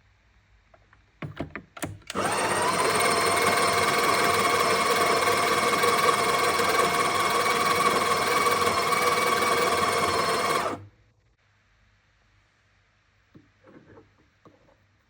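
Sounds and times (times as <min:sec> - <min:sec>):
espresso machine motor humming: 0:02.1 - 0:10.8.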